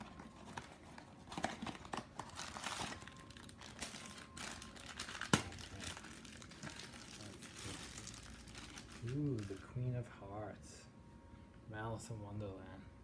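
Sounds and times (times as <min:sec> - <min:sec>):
packaging tearing and crinkling: 0:00.3 - 0:09.7.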